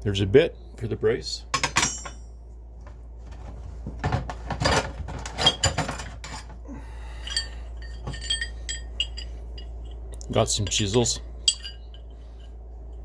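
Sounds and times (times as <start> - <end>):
metal tools clanking together: 1.5 - 2.3, 4.6 - 12.6
metallic clinks: 7.1 - 12.6.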